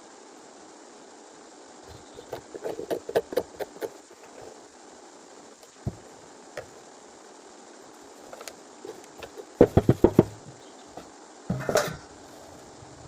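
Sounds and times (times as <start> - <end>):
steady hiss: 0.0 - 13.0
dull thump: 5.8 - 6.7, 9.2 - 12.0.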